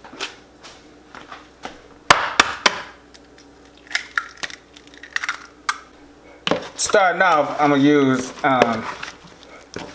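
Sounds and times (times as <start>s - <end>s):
eggs cracked against bowl rim: 3.1s - 5.9s.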